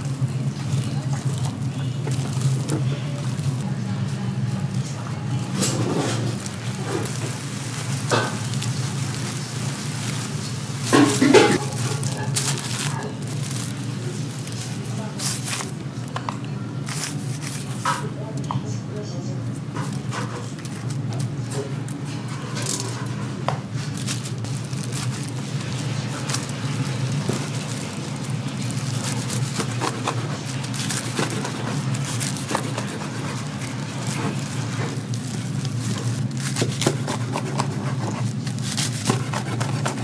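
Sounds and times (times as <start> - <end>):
utensils clicking and scraping: 23.8 - 40.0.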